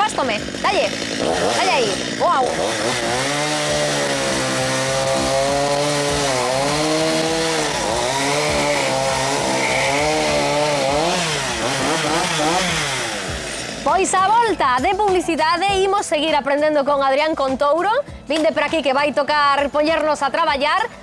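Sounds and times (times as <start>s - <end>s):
chainsaw cutting log: 0.0s - 16.0s.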